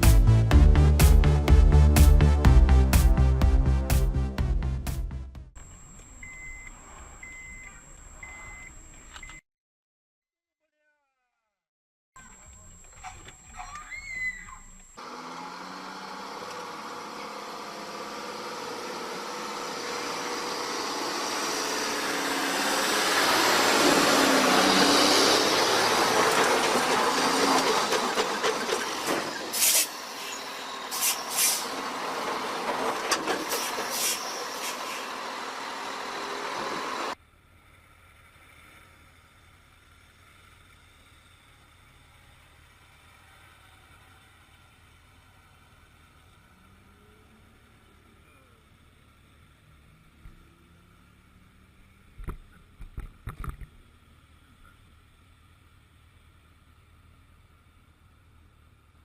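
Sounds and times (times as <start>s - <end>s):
heavy vehicle noise: 15.0s - 37.2s
sharp hissing bursts: 29.5s - 31.8s, 33.5s - 36.4s.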